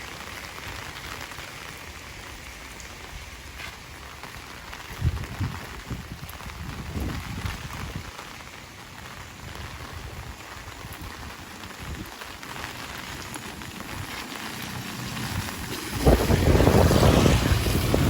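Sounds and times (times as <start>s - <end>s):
heavy rain falling: 0.0s - 18.0s
deep rush of noise: 15.9s - 18.0s.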